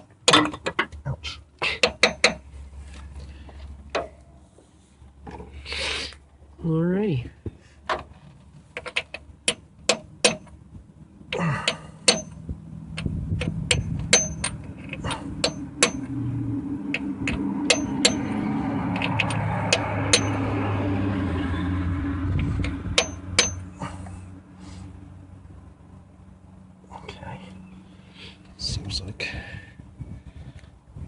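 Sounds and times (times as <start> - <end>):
hammer striking metal: 9.5 - 10.5, 12.0 - 12.4, 13.7 - 14.6, 15.4 - 16.1, 17.6 - 18.4, 19.7 - 20.4, 23.0 - 23.7.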